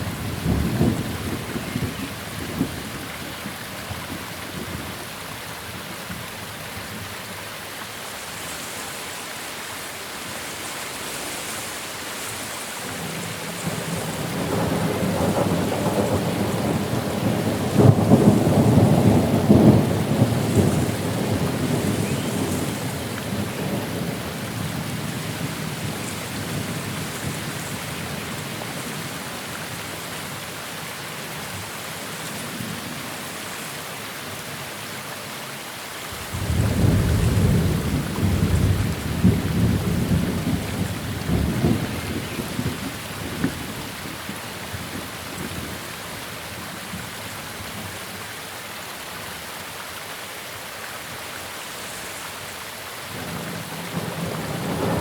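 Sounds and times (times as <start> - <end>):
steady rain: 0.0 - 55.0
thunder rumbling: 13.0 - 27.6, 36.2 - 44.2, 53.2 - 55.0.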